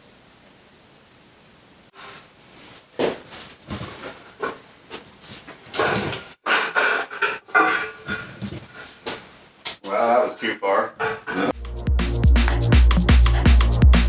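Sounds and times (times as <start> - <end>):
sheet steel scraping and knocking: 5.8 - 9.2, 11.0 - 11.6.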